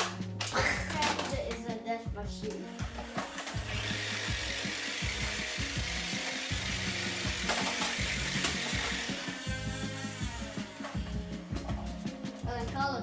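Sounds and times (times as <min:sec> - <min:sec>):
toy gun mechanical rattle: 0:02.5 - 0:11.1.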